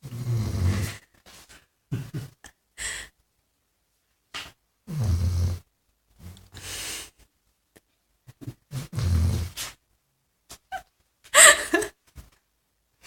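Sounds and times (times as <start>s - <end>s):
dog snoring: 0.0s - 1.0s, 4.9s - 6.3s, 8.7s - 9.6s.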